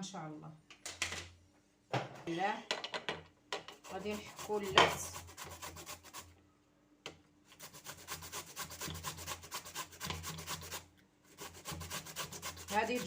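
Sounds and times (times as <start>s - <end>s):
turnip rasping on grater: 3.8s - 6.3s, 7.5s - 13.0s.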